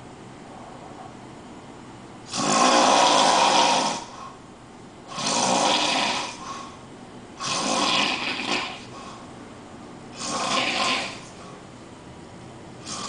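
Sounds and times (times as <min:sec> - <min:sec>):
person snoring loudly: 0:02.3 - 0:04.1, 0:05.1 - 0:06.4, 0:07.4 - 0:08.9, 0:10.2 - 0:11.4.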